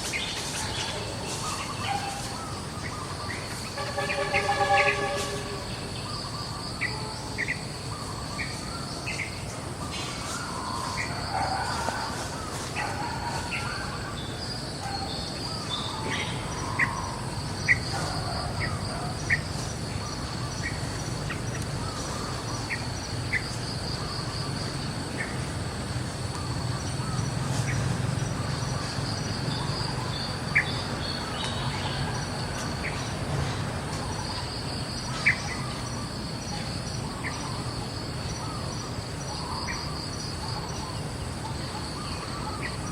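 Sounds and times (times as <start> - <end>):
insects trilling: 0.0 - 42.9.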